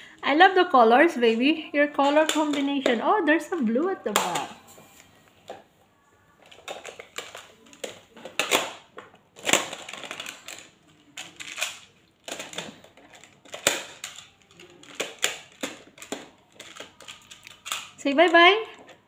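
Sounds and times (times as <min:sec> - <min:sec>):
plastic tiles clicking together: 0:09.4 - 0:18.8.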